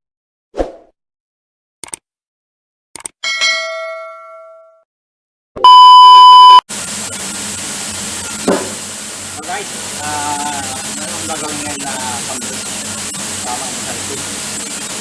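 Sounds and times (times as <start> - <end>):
short clicks: 1.8 - 2.0, 3.0 - 3.2
bell-like ding: 3.2 - 4.8
loud steady beep: 5.6 - 6.6
steady hiss: 6.7 - 15.0.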